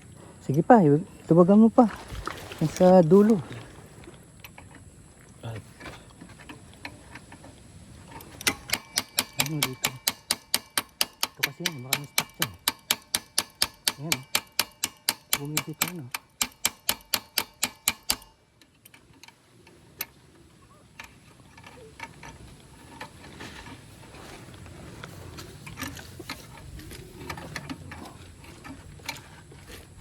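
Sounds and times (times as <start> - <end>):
hammer blows on metal: 8.4 - 18.4.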